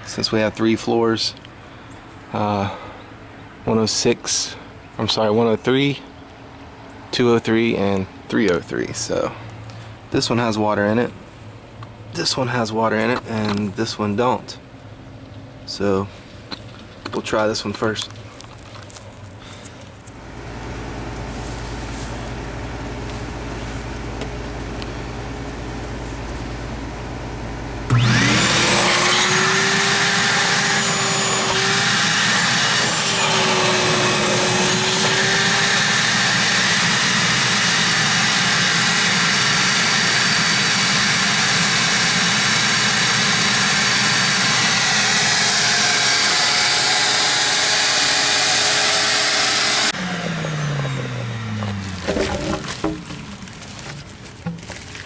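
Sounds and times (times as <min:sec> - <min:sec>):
shop vacuum motor whine: 0:20.2 - 0:54.0
vacuum motor winding down: 0:27.8 - 0:53.6.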